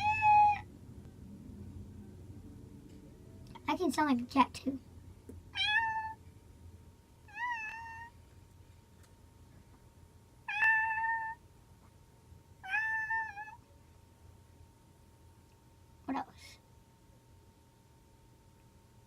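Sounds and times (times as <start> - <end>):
person imitating cat meows: 0.0 - 0.6.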